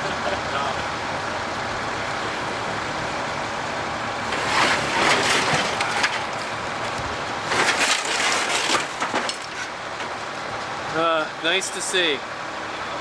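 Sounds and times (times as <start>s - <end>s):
debris crashing and clattering: 4.3s - 6.5s, 7.5s - 10.2s.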